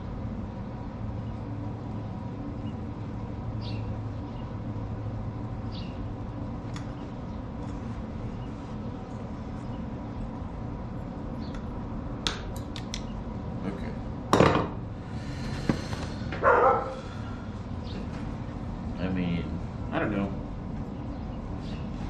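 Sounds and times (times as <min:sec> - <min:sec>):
steady hum: 0:00.0 - 0:22.0
sharp clicks: 0:12.2 - 0:13.1.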